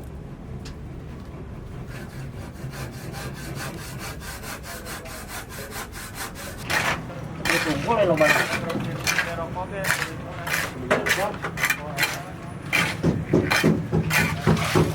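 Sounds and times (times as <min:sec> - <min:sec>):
hand saw rasping: 0:01.8 - 0:14.9
long saw scrapes: 0:01.8 - 0:14.9.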